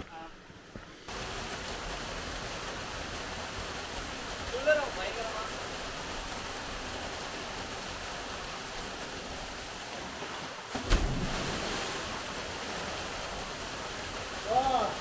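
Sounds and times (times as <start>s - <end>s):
water rushing: 1.0s - 15.0s
sharp thump: 10.8s - 11.5s.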